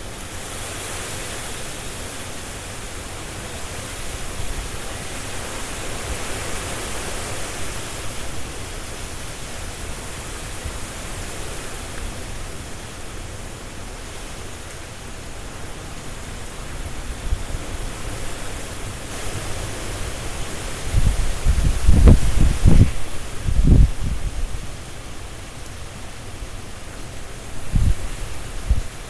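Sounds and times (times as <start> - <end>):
leaves rustling: 0.0 - 29.0
wind rushing through trees: 0.0 - 29.0.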